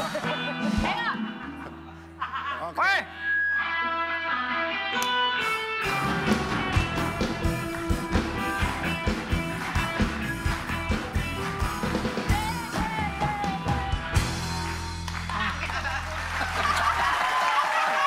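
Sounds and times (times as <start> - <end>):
guitar playing: 3.1 - 15.3
drums fast steady beat: 6.0 - 15.5.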